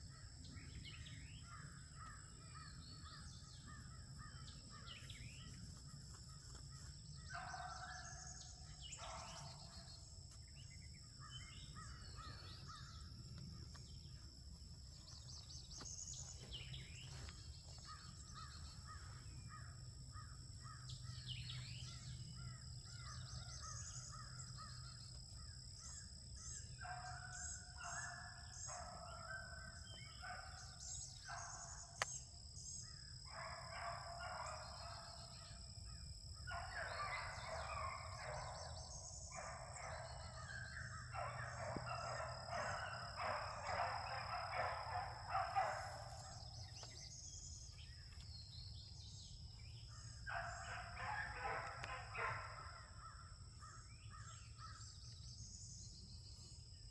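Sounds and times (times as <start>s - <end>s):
hounds barking and baying: 6.8s - 10.0s, 26.5s - 32.2s, 33.2s - 35.6s, 36.4s - 48.2s, 50.0s - 54.7s.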